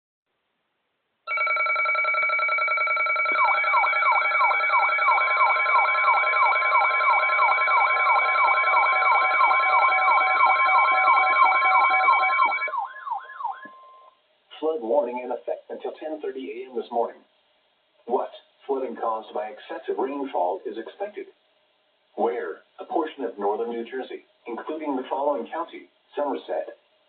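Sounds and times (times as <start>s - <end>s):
chord of electronic tones: 1.3s - 14.1s
siren-like sweep: 3.2s - 14.1s.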